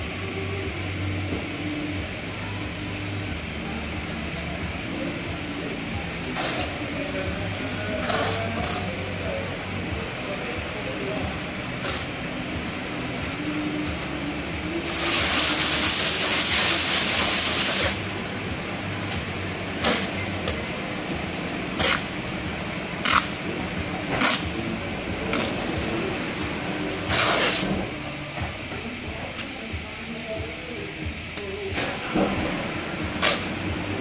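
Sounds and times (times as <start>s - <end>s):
compressed air hissing: 6.2s - 7.1s, 14.8s - 18.1s, 24.2s - 28.0s.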